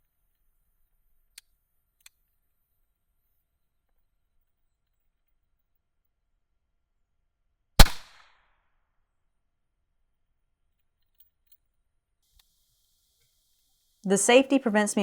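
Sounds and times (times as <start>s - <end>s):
revolver gunshot: 7.8s - 8.2s.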